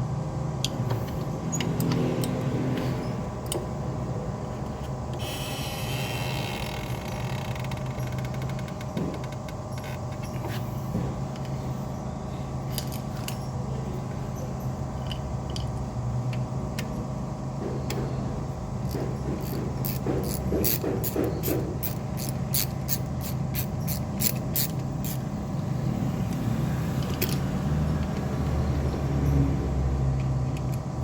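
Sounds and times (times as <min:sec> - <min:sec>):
mechanical hum: 0:00.0 - 0:31.0
metallic clicks and clinks: 0:27.0 - 0:28.2.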